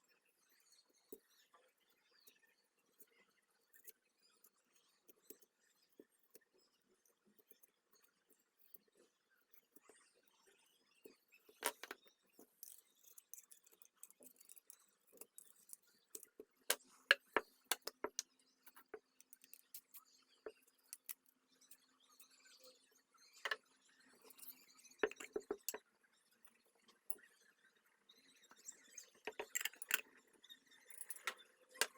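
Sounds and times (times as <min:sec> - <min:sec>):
small objects clicking and tapping: 0:11.1 - 0:21.8, 0:24.2 - 0:25.8, 0:29.2 - 0:31.9.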